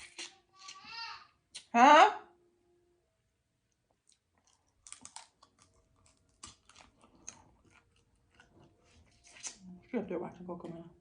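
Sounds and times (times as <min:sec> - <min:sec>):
mouth clicks and smacks: 0:00.0 - 0:00.8
person chewing: 0:03.7 - 0:09.6.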